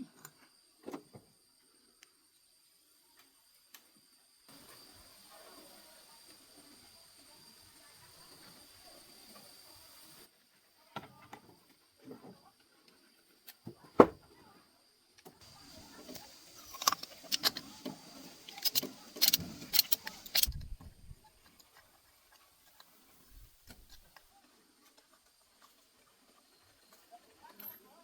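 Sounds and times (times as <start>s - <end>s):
metal tools clinking and rattling: 15.4s - 20.7s.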